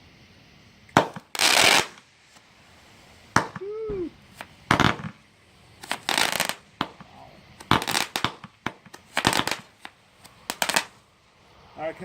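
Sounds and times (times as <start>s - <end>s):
fireworks crackling: 0.0s - 12.0s
firework bangs: 0.9s - 11.1s.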